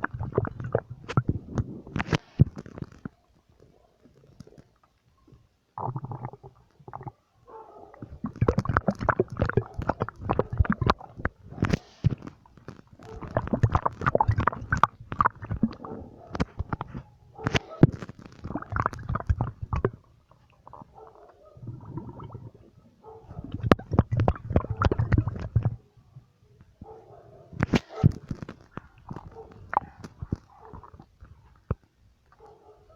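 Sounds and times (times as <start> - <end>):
stomach growling: 0.0 - 32.9
squelching pops: 8.2 - 20.0, 27.6 - 30.6.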